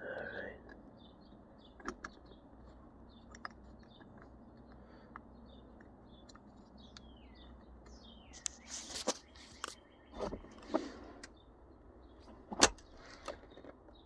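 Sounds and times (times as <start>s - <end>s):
birds chirping faintly: 0.0s - 14.0s
scraping rustle: 8.3s - 11.2s.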